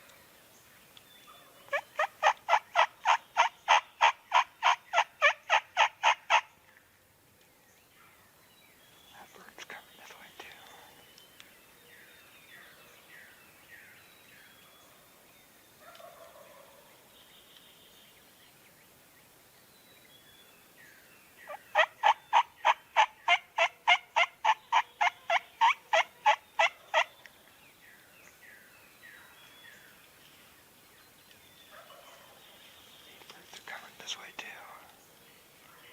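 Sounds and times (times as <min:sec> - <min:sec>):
distant turkey calls: 0:01.3 - 0:06.6, 0:21.5 - 0:27.2
turkey yelps: 0:01.6 - 0:06.5, 0:21.5 - 0:27.1.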